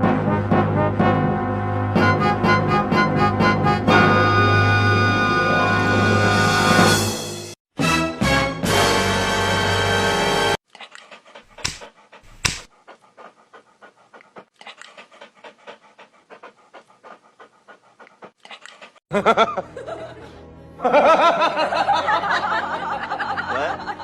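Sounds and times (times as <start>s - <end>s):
dog pitched vocal sounds: 10.7s - 19.0s
dog panting: 10.8s - 19.0s.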